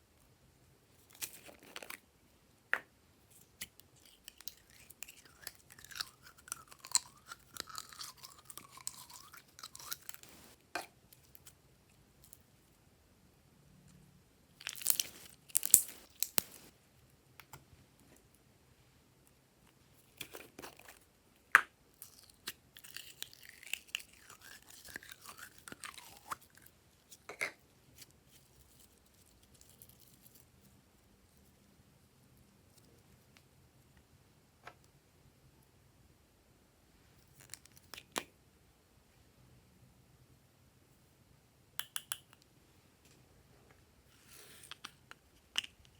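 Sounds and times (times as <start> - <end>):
slime sticky clicks and crackles: 14.6 - 16.5.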